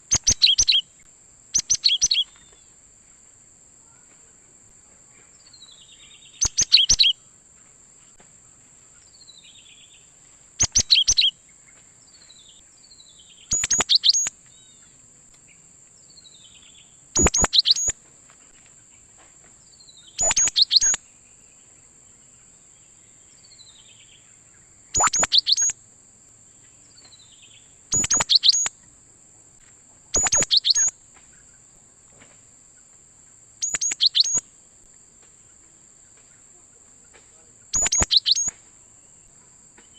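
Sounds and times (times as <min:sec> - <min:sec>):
bird singing rapid high notes: 0:00.1 - 0:00.8, 0:01.6 - 0:02.2, 0:06.4 - 0:07.1, 0:10.6 - 0:11.3, 0:13.5 - 0:14.3, 0:17.2 - 0:17.9, 0:20.2 - 0:21.0, 0:25.0 - 0:25.7, 0:27.9 - 0:28.7, 0:30.2 - 0:30.9, 0:33.6 - 0:34.4, 0:37.8 - 0:38.5
falling bird chirps: 0:00.1 - 0:00.8, 0:01.6 - 0:02.7, 0:06.2 - 0:07.2, 0:10.6 - 0:11.3, 0:13.2 - 0:14.9, 0:17.2 - 0:17.9, 0:20.0 - 0:21.0, 0:24.9 - 0:25.7, 0:27.0 - 0:28.7, 0:30.2 - 0:31.5, 0:33.6 - 0:34.4, 0:37.7 - 0:38.6.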